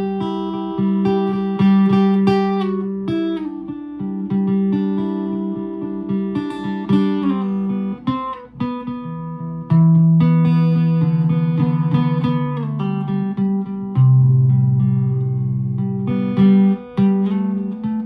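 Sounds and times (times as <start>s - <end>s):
solo guitar plucked notes and chords: 0.0s - 18.0s.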